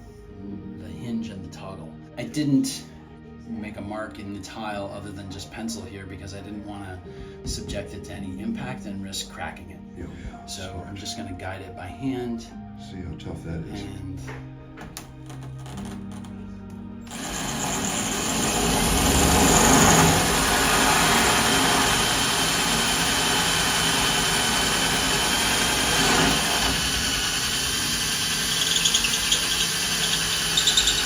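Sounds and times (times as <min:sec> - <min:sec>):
power drill grinding through tile: 0:17.0 - 0:31.0
scratchy high squeal: 0:24.4 - 0:31.0.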